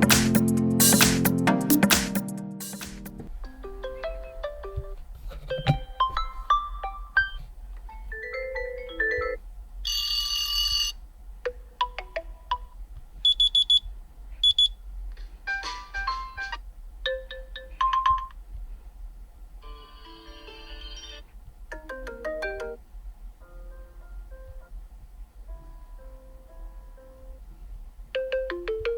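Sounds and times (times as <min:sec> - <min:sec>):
phone ringtones and chimes: 0:08.1 - 0:11.0, 0:19.6 - 0:21.2.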